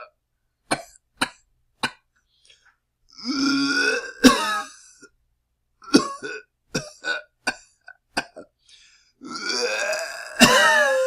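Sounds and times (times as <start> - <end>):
person coughing: 4.2 - 4.8, 10.1 - 11.0.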